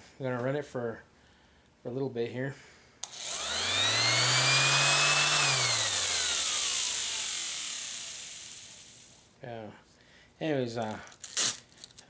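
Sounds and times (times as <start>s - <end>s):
sander motor whining: 3.0s - 9.3s.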